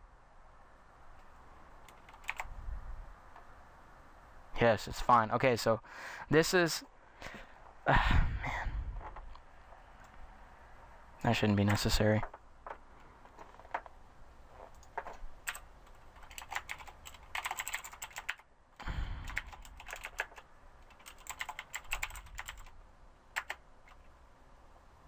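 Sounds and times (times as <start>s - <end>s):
typing on computer keyboard: 1.8s - 2.5s, 14.8s - 18.5s, 19.2s - 22.7s, 23.4s - 24.1s.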